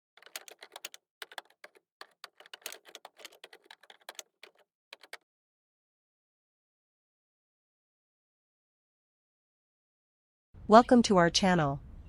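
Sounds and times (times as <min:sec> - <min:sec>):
fast typing on a keyboard: 0:00.0 - 0:05.2.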